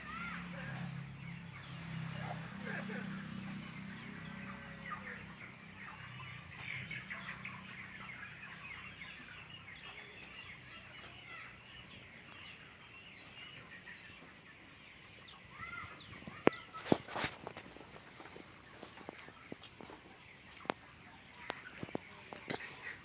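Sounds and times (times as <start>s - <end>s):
chickens clucking: 1.6s - 23.0s.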